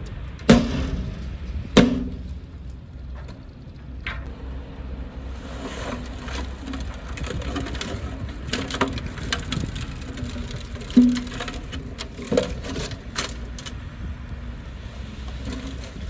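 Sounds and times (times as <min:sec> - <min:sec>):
bulldozer engine running: 0:00.0 - 0:16.0
wood cracking and snapping: 0:06.0 - 0:13.8, 0:15.3 - 0:16.0.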